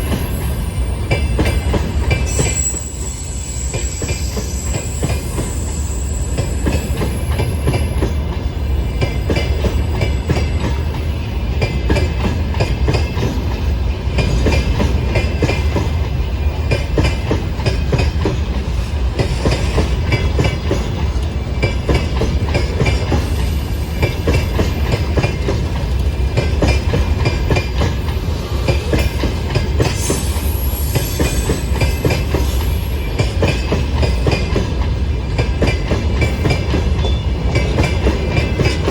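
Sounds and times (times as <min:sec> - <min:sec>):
train wheels clattering: 0:00.0 - 0:38.9
high-pitched wheel squeal: 0:02.3 - 0:07.6.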